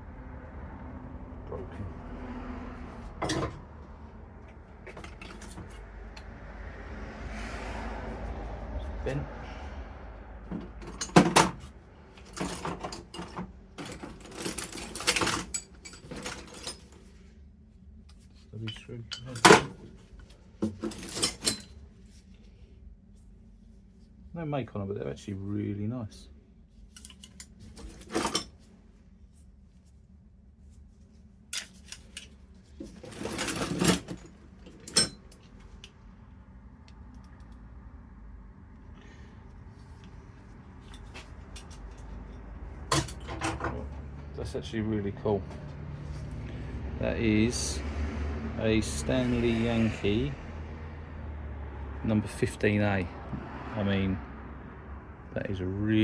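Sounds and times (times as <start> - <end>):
scraping rustle of tools: 10.7 - 17.4, 26.7 - 30.0, 30.6 - 35.8
metal tools clinking: 10.8 - 17.1, 18.6 - 20.0, 20.6 - 21.8, 26.9 - 28.6, 31.6 - 35.5, 40.8 - 43.8.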